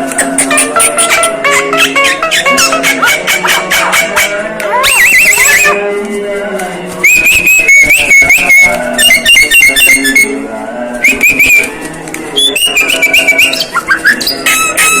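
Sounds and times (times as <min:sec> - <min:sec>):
bird whistling and chattering: 0:01.8 - 0:05.8, 0:07.1 - 0:10.4, 0:12.4 - 0:15.0.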